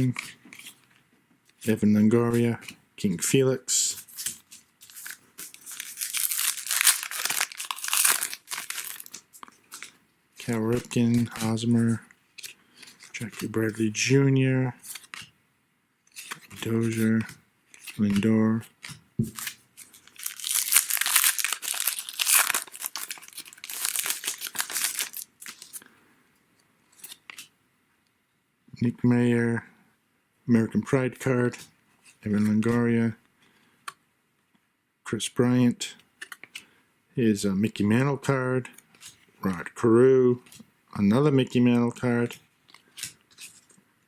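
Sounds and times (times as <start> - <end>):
wrapper tearing and crinkling: 4.2 - 9.9, 19.4 - 25.8.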